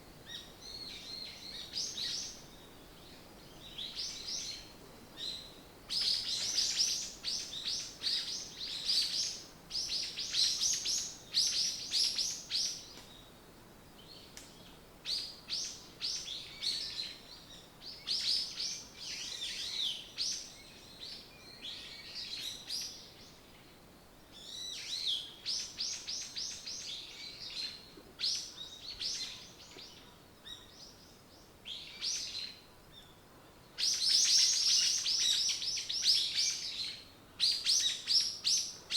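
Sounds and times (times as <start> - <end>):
songbirds chirping: 0.0 - 38.9.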